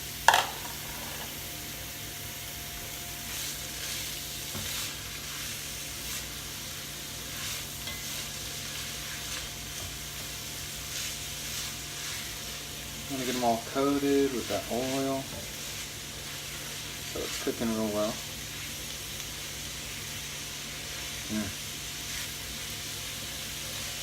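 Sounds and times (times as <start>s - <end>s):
vegetables sizzling in oil: 0.0s - 24.0s
soft scrapes: 0.7s - 1.4s.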